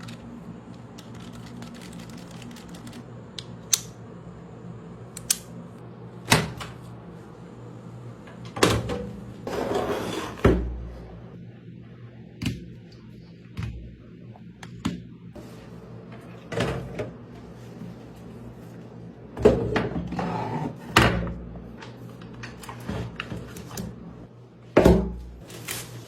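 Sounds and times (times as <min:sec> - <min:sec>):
steady low hum: 0:00.0 - 0:09.5.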